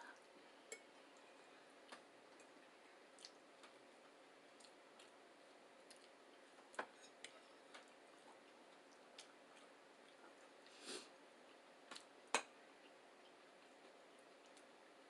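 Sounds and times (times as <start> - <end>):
light eating clicks: 5.8 - 10.4.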